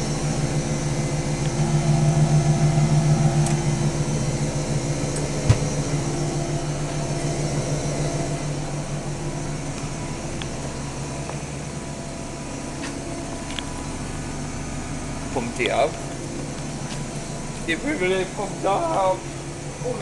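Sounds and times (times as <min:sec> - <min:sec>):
washing machine humming: 0:00.0 - 0:20.0
sharp knock: 0:05.5 - 0:05.7.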